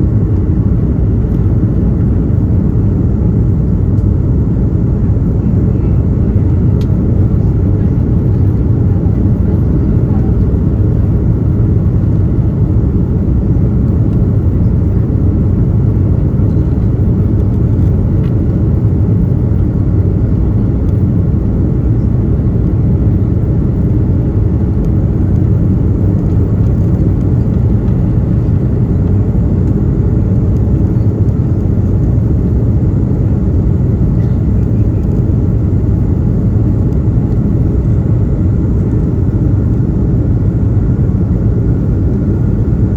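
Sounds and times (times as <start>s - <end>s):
airliner cabin engine rumble: 0.0s - 42.9s.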